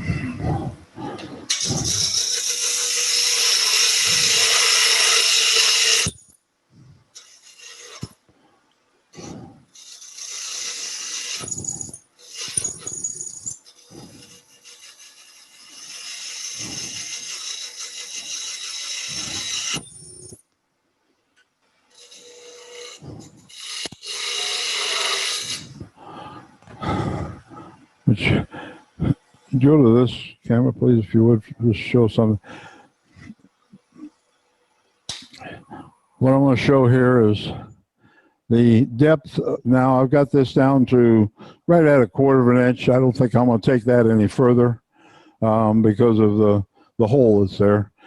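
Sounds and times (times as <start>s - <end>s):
faint lathe hum: 0.0s - 20.6s, 21.8s - 34.4s
lathe tool cutting wood: 1.5s - 6.2s, 7.2s - 8.2s, 9.2s - 13.0s, 13.6s - 19.8s, 21.9s - 25.9s.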